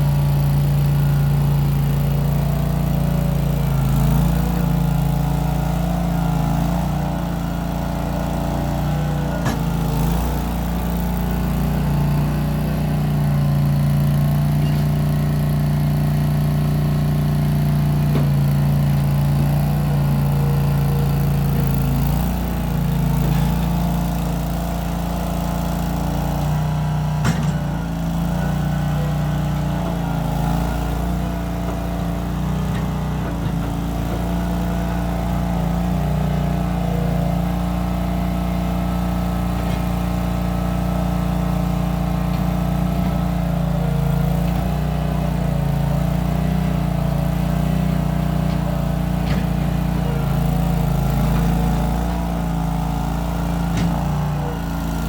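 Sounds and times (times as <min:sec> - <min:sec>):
skid steer engine running: 0:00.0 - 0:55.0.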